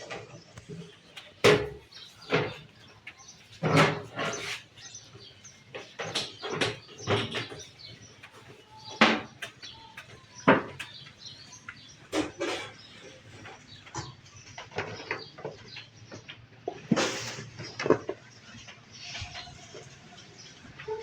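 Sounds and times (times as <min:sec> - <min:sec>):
washing machine parts knocking: 0:01.2 - 0:02.8, 0:05.7 - 0:11.1.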